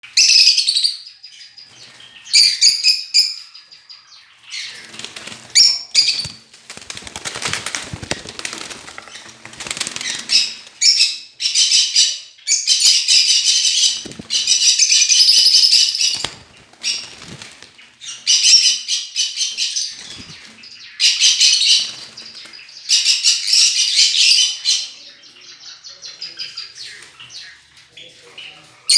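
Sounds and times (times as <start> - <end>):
wing flapping: 4.7 - 10.8, 13.7 - 14.8, 15.5 - 17.9, 20.0 - 20.6.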